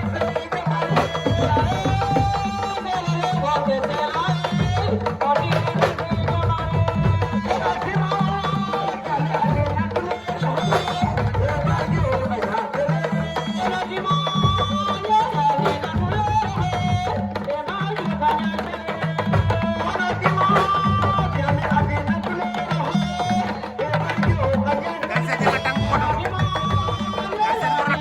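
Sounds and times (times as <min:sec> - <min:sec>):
fast hand-drumming: 0:00.0 - 0:28.0.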